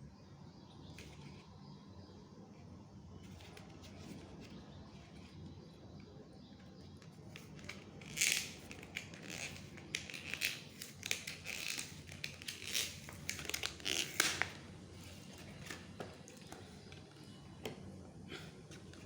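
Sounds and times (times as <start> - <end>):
packaging crinkling and tearing: 7.3 - 16.5.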